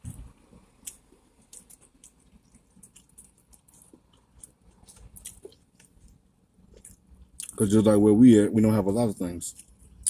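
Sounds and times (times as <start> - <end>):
wet chewing clicks: 0.8 - 7.6.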